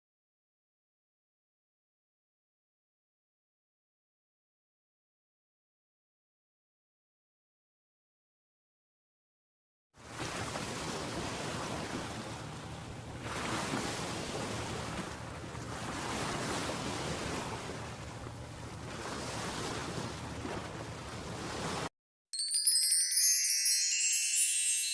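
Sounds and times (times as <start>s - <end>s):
waves washing onto shore: 10.0s - 21.9s.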